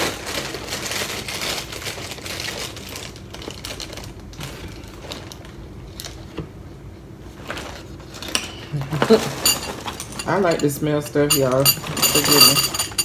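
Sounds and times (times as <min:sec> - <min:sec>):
packaging crinkling: 0:00.0 - 0:06.2.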